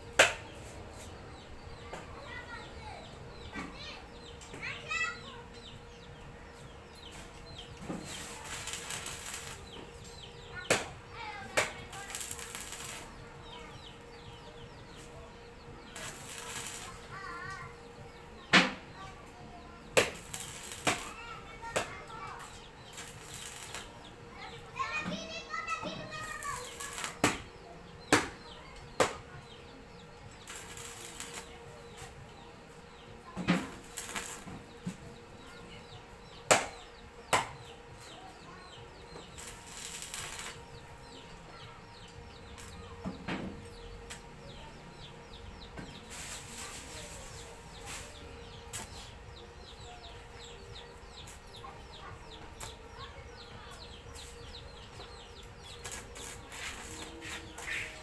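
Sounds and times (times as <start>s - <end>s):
short hissing bursts: 11.9s - 13.2s, 30.4s - 31.6s.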